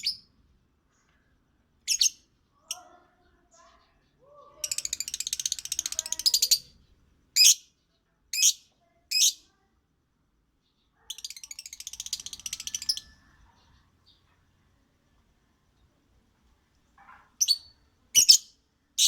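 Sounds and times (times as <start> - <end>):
bird chattering trill: 4.6 - 6.7, 11.0 - 13.8, 17.4 - 18.5
loud bird chirps: 17.4 - 19.0.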